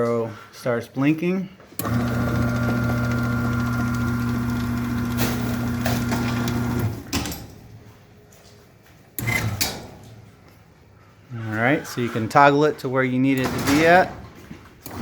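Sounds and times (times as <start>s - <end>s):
garage door opener motor: 1.8s - 7.3s.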